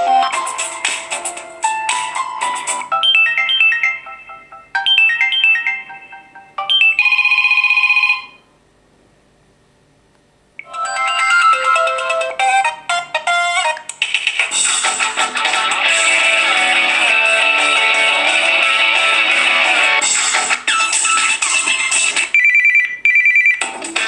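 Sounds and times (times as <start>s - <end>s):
electronic ringtone melody: 0.0s - 0.9s, 1.6s - 8.4s, 10.6s - 13.8s, 15.8s - 20.1s
buzzy chime: 10.6s - 13.4s.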